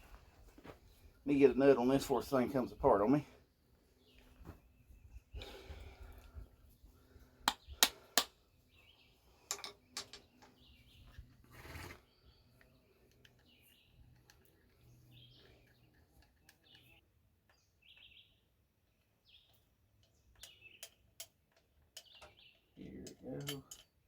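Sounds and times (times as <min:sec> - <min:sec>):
birds chirping faintly: 0:00.0 - 0:24.0.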